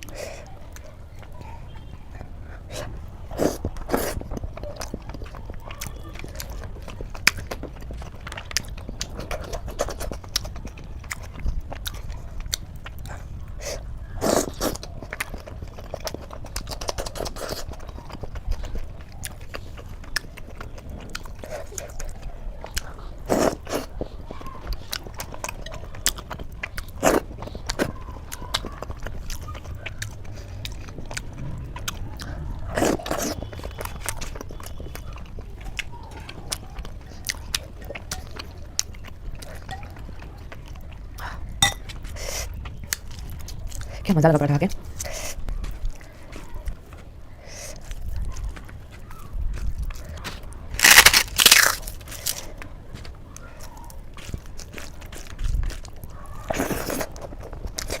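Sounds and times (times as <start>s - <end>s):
person chewing wetly: 0.0s - 44.0s, 44.6s - 58.0s
loud bites: 50.8s - 52.0s.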